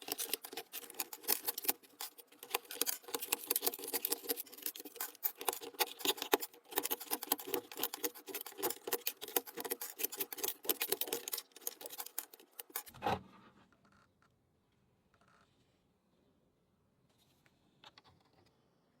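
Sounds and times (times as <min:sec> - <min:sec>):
plastic keyboard parts scratching: 0:00.0 - 0:13.2.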